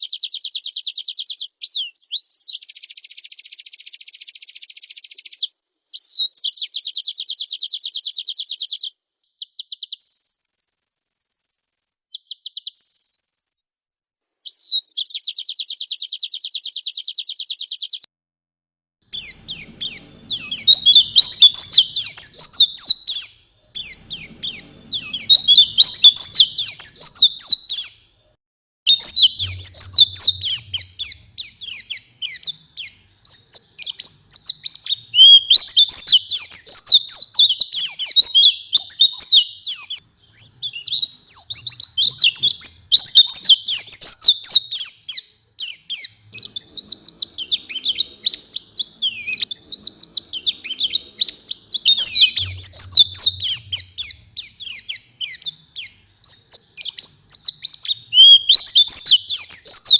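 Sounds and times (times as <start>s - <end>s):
bird twittering chirps and trills: 6.2s - 13.6s, 19.1s - 28.1s, 28.9s - 59.9s.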